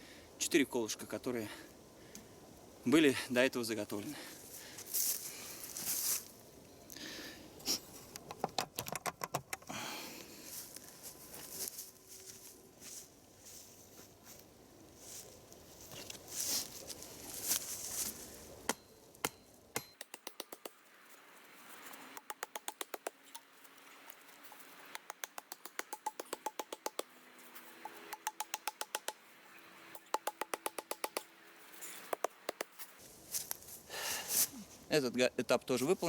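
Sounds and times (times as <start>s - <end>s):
rustling and handling: 4.3s - 6.4s, 10.2s - 18.6s, 31.6s - 34.9s
axe striking wooden stakes: 18.7s - 20.8s, 22.2s - 23.5s, 24.9s - 27.1s, 27.8s - 29.2s, 29.9s - 31.3s, 32.1s - 32.8s.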